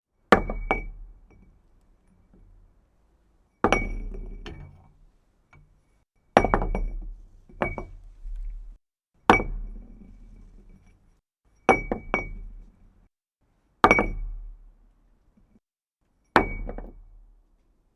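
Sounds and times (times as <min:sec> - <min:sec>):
glass bouncing with ringing ping: 0:00.4 - 0:01.0, 0:03.6 - 0:04.8, 0:11.6 - 0:12.5, 0:13.9 - 0:14.3, 0:16.3 - 0:17.0
glass clinking on hard surface: 0:03.6 - 0:04.8, 0:06.4 - 0:08.0, 0:11.6 - 0:12.5.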